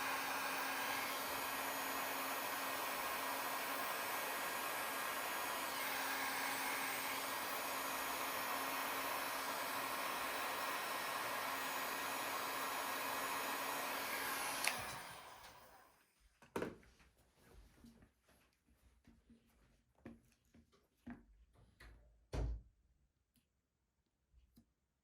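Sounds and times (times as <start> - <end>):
hot-air blower humming: 0.0 - 15.9.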